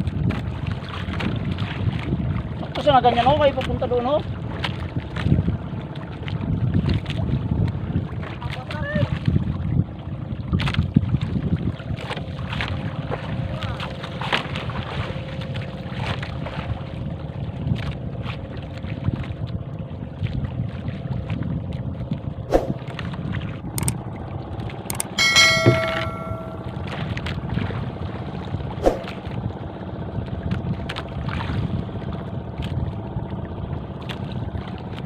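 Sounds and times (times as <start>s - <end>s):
wind and water rumble: 0.0s - 35.0s
bell-like ringing tone: 25.0s - 26.8s.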